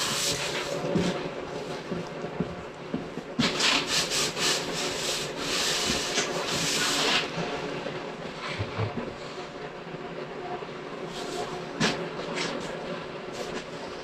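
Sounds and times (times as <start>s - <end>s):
hand scrubbing fiberglass: 0.0s - 1.2s, 3.4s - 7.3s.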